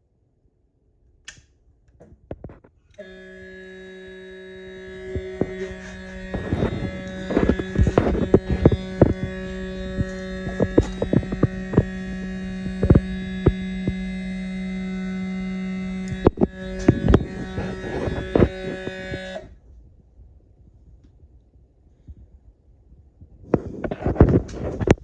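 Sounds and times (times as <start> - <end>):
servo motor electrical buzz: 3.0 - 19.5.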